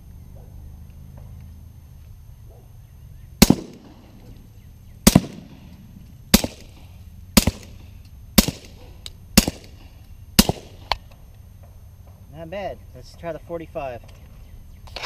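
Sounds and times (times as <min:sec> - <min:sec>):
suppressed pistol shots: 0:03.4 - 0:11.0.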